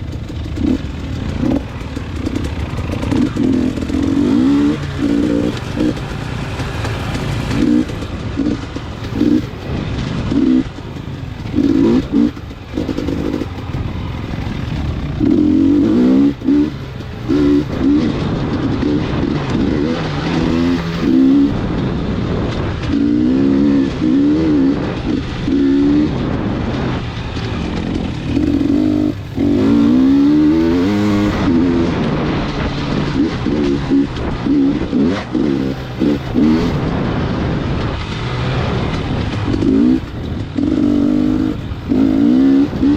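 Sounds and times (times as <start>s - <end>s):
vehicle engine running: 0.0s - 42.9s.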